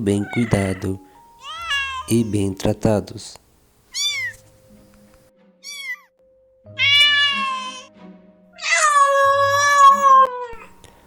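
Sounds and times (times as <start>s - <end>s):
cat meowing: 0.2s - 2.4s, 3.9s - 4.4s, 5.6s - 6.1s, 6.8s - 7.9s, 8.6s - 10.7s.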